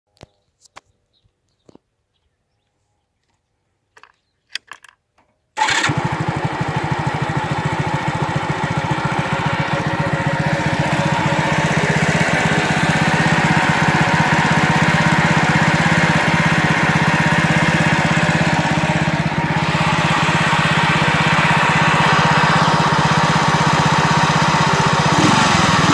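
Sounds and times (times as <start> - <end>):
moped engine starting and running: 5.6 - 25.9.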